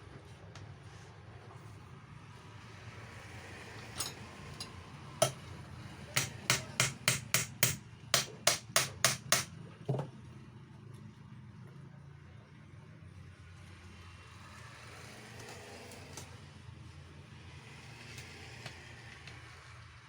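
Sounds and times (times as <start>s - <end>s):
low background hum: 0.0s - 12.9s
hammer striking metal housing: 6.2s - 9.5s.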